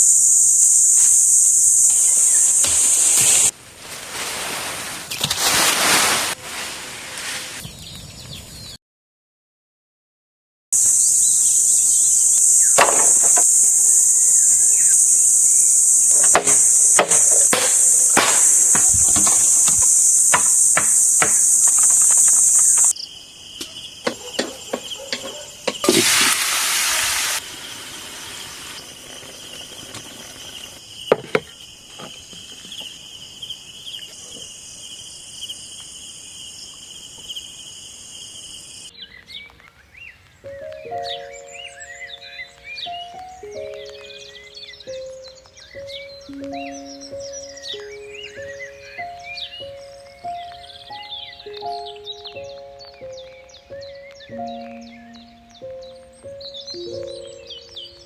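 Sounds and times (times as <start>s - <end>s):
high-pitched insect drone: 0.0s - 3.5s, 10.8s - 23.0s
soft insect trill: 0.0s - 3.5s, 10.8s - 39.2s
sharp knocks and taps: 16.1s - 22.9s, 23.6s - 25.8s.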